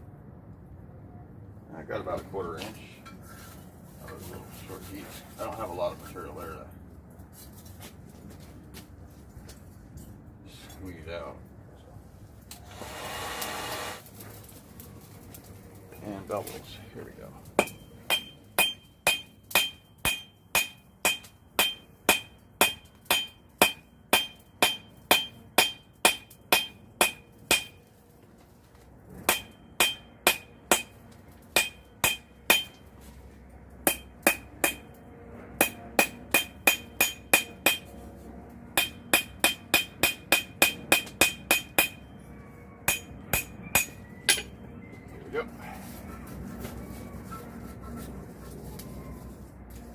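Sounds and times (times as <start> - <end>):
hammer ringing on anvil: 17.6 - 27.8, 29.3 - 30.9, 31.6 - 32.8, 35.6 - 37.9, 38.8 - 42.0, 42.9 - 44.6.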